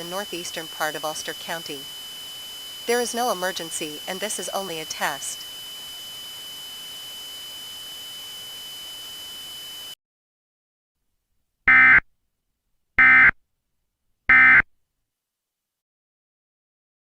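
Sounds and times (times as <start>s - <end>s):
electronic data bursts: 0.0s - 10.0s
steady high tone: 0.0s - 10.0s.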